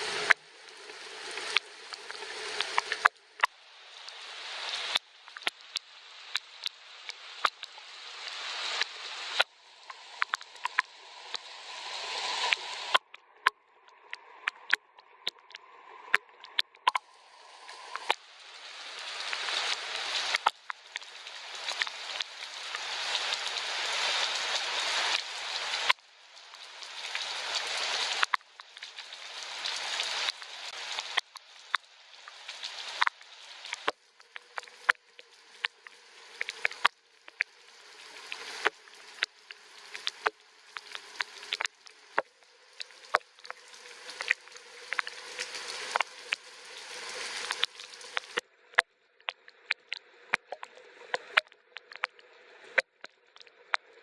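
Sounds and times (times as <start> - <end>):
hiss of falling rain: 0.0 - 13.0, 17.0 - 48.4
drips tapping: 4.9 - 6.8, 7.4 - 7.8, 9.4 - 10.9, 12.4 - 17.0, 17.7 - 18.2, 20.3 - 21.1, 31.0 - 37.5, 38.3 - 46.5, 47.4 - 54.0.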